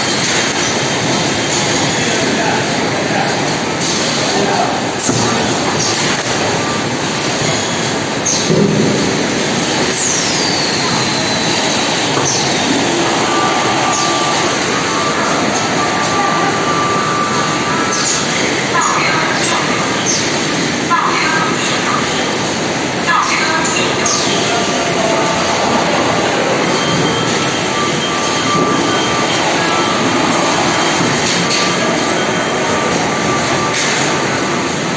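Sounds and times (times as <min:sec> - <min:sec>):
factory machinery running: 0:00.0 - 0:34.9
faint high squeal: 0:09.9 - 0:18.7, 0:24.1 - 0:34.4.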